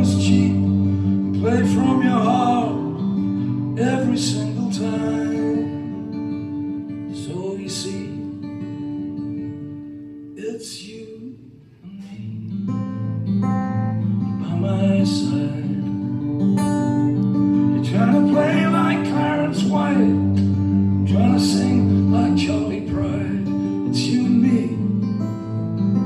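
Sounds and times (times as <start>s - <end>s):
acoustic guitar band music: 0.0s - 26.0s
bass line: 17.9s - 23.4s.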